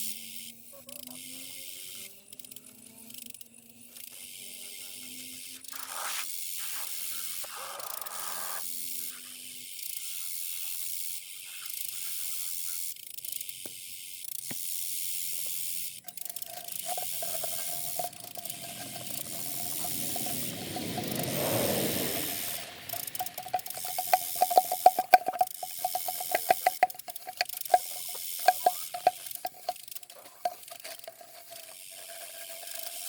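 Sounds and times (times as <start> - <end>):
scrubbing brush on plastic: 16.3 - 33.0.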